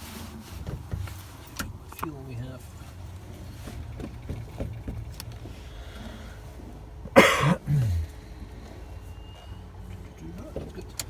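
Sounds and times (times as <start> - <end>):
person coughing: 7.2 - 8.1.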